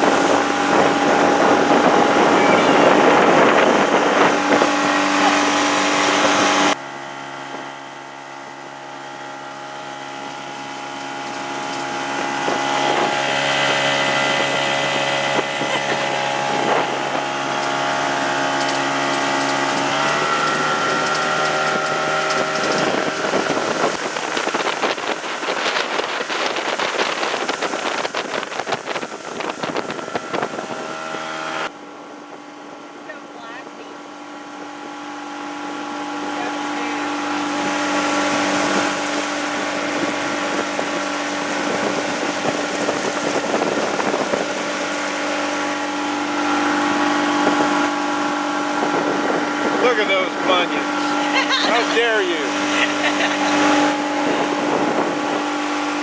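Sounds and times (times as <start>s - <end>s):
wind on microphone: 0.0s - 6.8s, 11.4s - 33.0s, 35.8s - 56.0s
outboard motor running: 0.0s - 56.0s.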